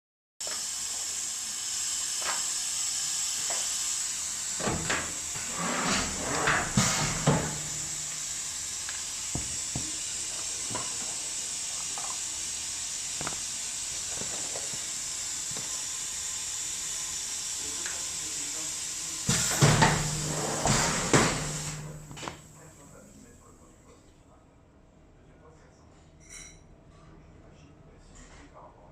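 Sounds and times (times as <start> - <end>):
welding machine hiss: 0.4 - 23.1
loud machine clattering: 4.6 - 8.9, 19.3 - 22.5.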